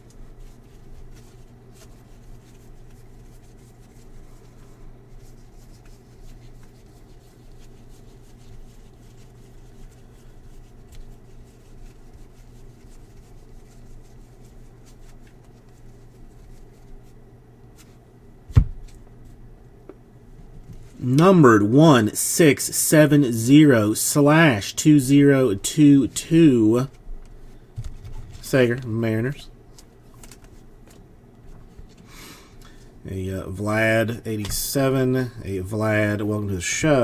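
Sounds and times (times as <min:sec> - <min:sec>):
cards sliding and rustling: 0:29.7 - 0:32.8.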